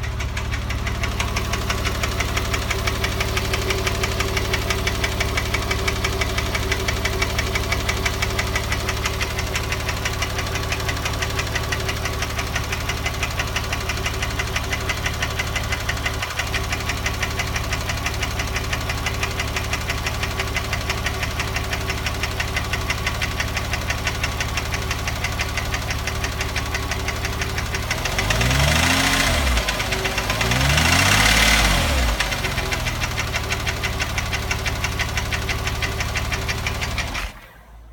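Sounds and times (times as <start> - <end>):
car engine idling with ticking: 0.0 - 37.7
engine revving: 27.8 - 33.4.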